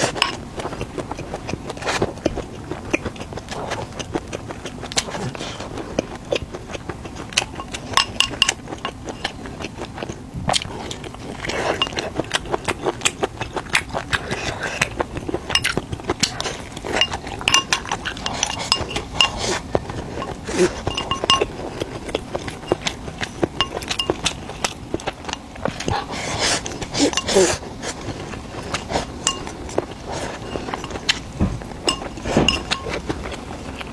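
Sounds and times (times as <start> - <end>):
utensils clinking on ceramic dishes: 7.5 - 9.3, 11.8 - 12.0, 16.4 - 26.0, 27.0 - 33.4.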